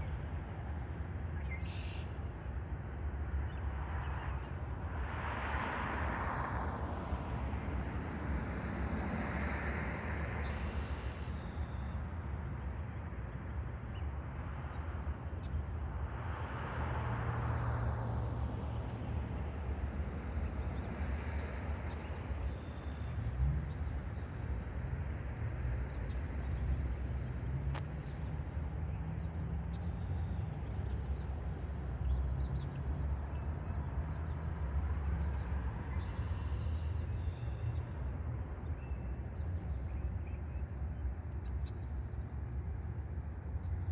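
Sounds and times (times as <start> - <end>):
low traffic rumble: 2.2 - 43.9
cars passing: 3.4 - 11.0, 14.4 - 41.3.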